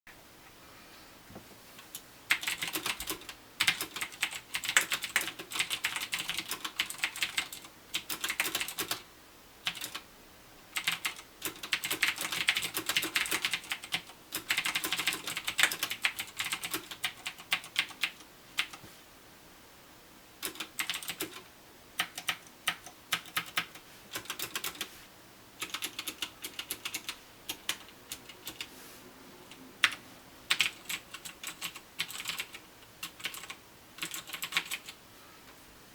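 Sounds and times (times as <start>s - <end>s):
clicky mechanical keyboard typing: 1.8s - 9.0s, 9.6s - 10.0s, 10.8s - 18.8s, 20.4s - 21.4s, 22.0s - 24.9s, 25.6s - 28.7s, 29.8s - 35.0s.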